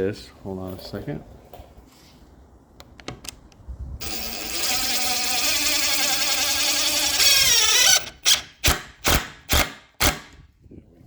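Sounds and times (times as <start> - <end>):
electric drill driving screw: 4.0 - 10.2.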